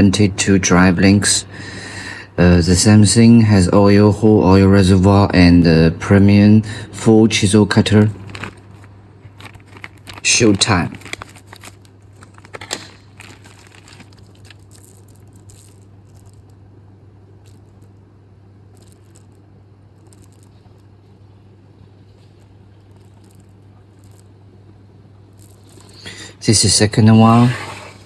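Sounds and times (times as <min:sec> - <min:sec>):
chainsaw chain clicks and rustles: 0:08.0 - 0:16.6, 0:25.4 - 0:26.1.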